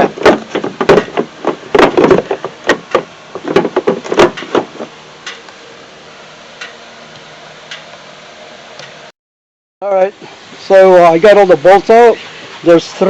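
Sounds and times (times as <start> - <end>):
hard plastic knocks and clunks: 0.0 - 5.4
low hum: 0.0 - 9.1.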